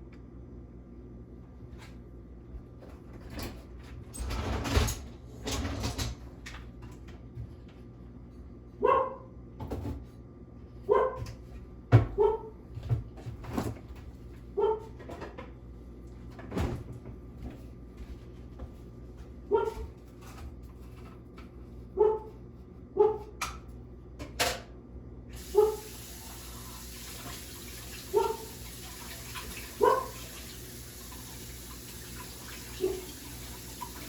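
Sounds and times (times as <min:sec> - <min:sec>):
dog barking: 0:08.8 - 0:09.3, 0:10.9 - 0:11.3, 0:12.2 - 0:12.6, 0:14.6 - 0:15.0, 0:19.5 - 0:19.9, 0:22.0 - 0:22.4, 0:23.0 - 0:23.4, 0:25.5 - 0:25.9, 0:28.1 - 0:28.5, 0:29.8 - 0:30.3, 0:32.8 - 0:33.1.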